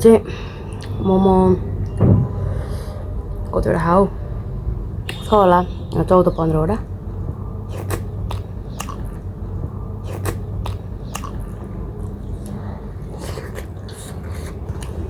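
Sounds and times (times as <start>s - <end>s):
steady low hum: 0.0s - 15.0s
chewing with wet mouth clicks: 7.7s - 15.0s.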